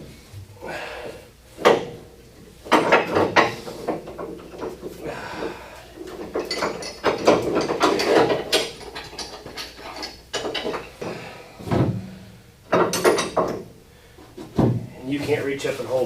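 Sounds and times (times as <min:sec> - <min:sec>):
metal tools clanking and scraping: 0:02.6 - 0:12.1, 0:12.7 - 0:13.7.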